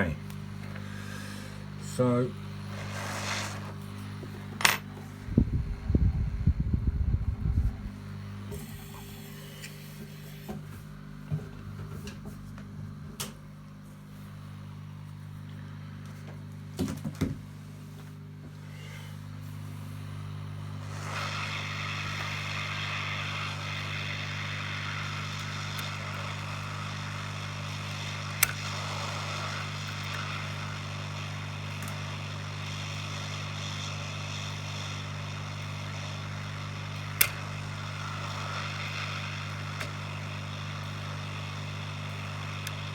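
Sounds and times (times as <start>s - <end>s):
hot air hissing: 0.0s - 5.8s, 7.3s - 10.6s, 18.6s - 42.9s
rework station humming: 0.0s - 42.9s.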